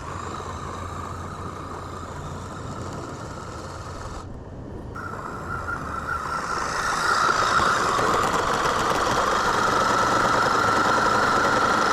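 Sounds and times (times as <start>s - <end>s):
rc car motor whining: 0.0s - 4.4s, 5.0s - 11.9s.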